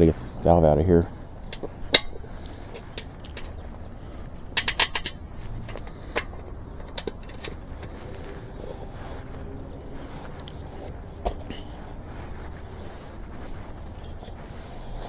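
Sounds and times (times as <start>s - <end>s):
sharp clicks from bike wheel: 1.4s - 8.4s.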